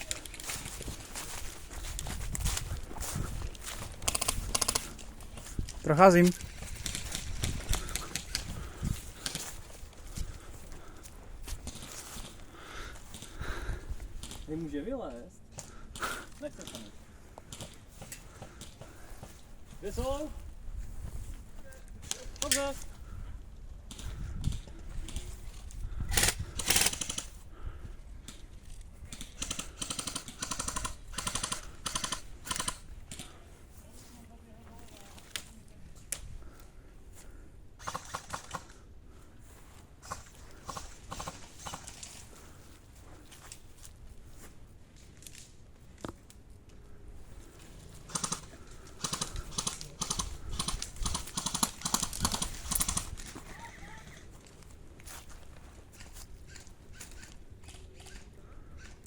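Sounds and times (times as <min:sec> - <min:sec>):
footsteps crunching on rough ground: 0:00.0 - 0:14.5, 0:38.6 - 0:49.0, 0:51.0 - 0:57.9
airsoft rifle full-auto bursts: 0:04.0 - 0:05.0, 0:26.1 - 0:27.4, 0:29.1 - 0:32.9, 0:37.8 - 0:38.8, 0:48.1 - 0:53.1.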